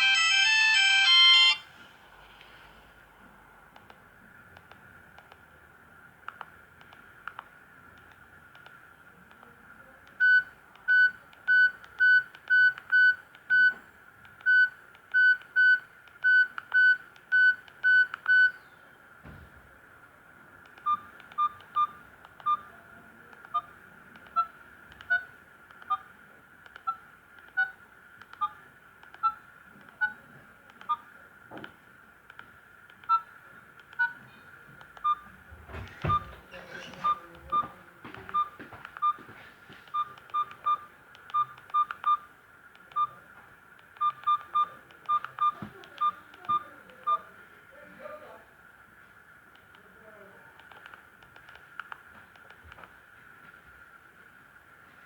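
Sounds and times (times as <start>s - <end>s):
beeping ringtone melody: 0.0s - 1.7s
phone beeping ringtone: 0.0s - 1.7s.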